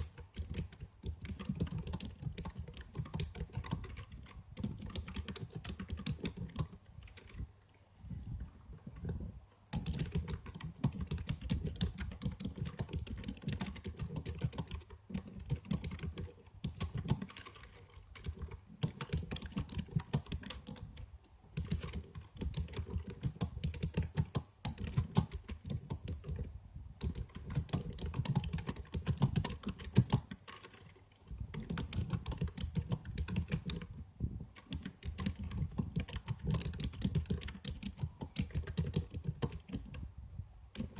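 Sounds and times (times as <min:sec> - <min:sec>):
computer keyboard typing: 0:00.0 - 0:07.4, 0:08.8 - 0:40.0.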